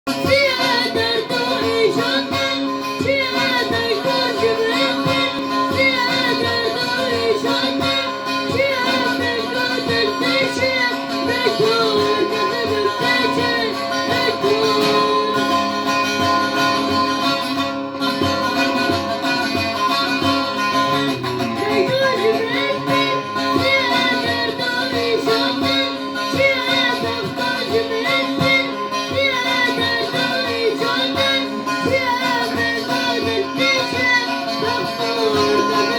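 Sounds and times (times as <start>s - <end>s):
plucked string instrument: 0.0s - 35.9s
person singing ornamented melody: 0.1s - 17.6s, 18.4s - 35.9s.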